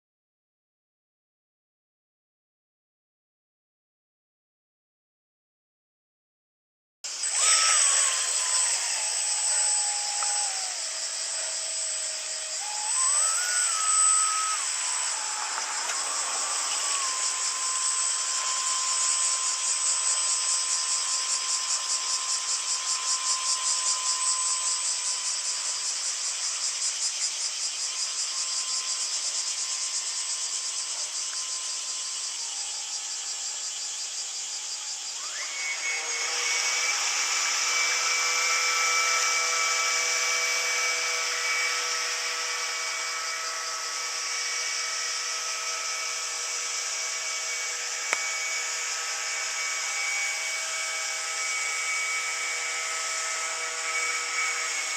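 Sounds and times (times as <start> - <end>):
model boat motor whine: 7.1 - 54.9
constant high hiss: 7.2 - 35.2.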